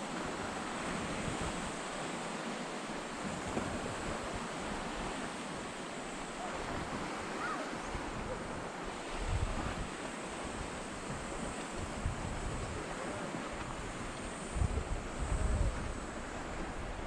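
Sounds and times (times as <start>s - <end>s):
surf rushing: 0.0s - 17.0s
wind buffeting microphone: 6.4s - 17.0s.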